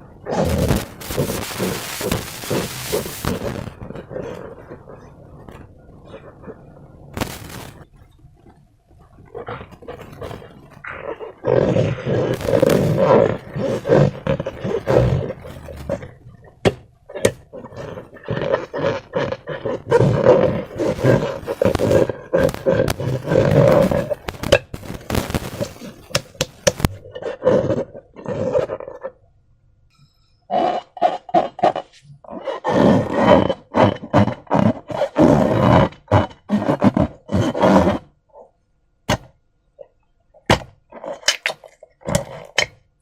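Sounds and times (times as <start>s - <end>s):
slime squelching and crackling: 0.0s - 29.2s, 40.4s - 42.8s.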